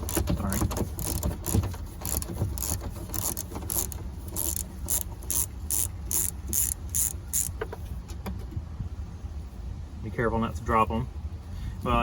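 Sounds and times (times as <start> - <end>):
socket ratchet clicking: 0.0 - 7.6.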